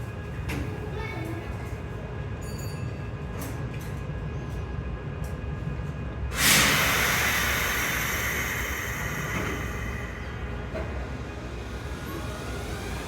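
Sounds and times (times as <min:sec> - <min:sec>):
train low rumble: 0:00.0 - 0:13.0
loud hiss: 0:06.4 - 0:10.5.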